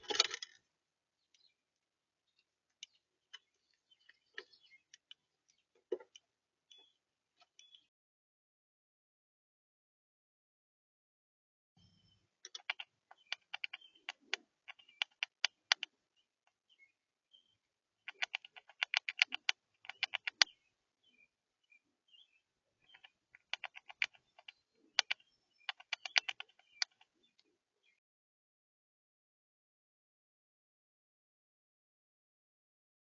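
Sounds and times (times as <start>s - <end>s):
faint bird chirps: 2.2s - 7.9s, 11.8s - 28.0s
bird pecking sharp taps: 12.5s - 15.9s, 18.1s - 20.6s, 22.9s - 27.1s.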